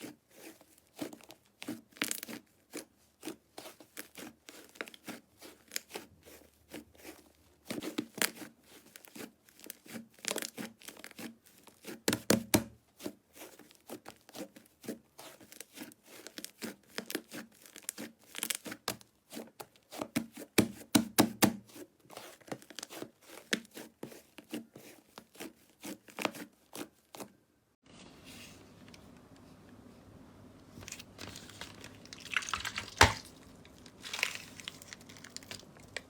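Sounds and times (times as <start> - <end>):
slime squishing: 30.8 - 36.0
slime crackling and popping: 30.9 - 36.0.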